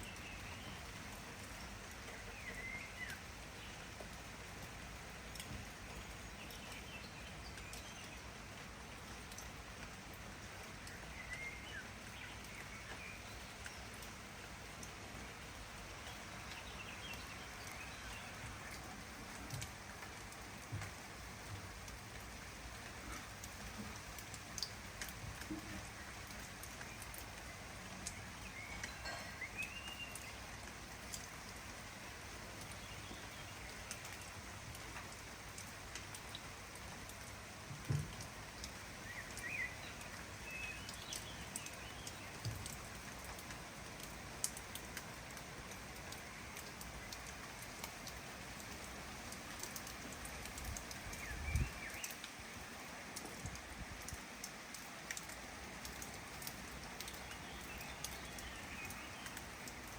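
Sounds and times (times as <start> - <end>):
steady rain: 0.0 - 59.9
faint bird chirps: 28.1 - 30.4.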